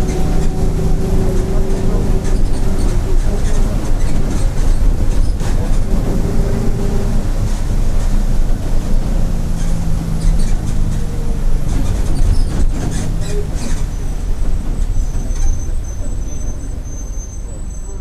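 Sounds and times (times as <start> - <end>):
bus body rattling: 0.0 - 18.0
bus engine drone: 0.0 - 18.0.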